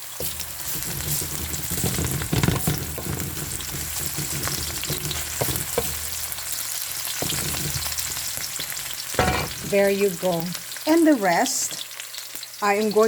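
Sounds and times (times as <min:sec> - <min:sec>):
utensil scraping and knocking pot: 0:00.0 - 0:10.1
onions sizzling in hot oil: 0:00.0 - 0:13.0.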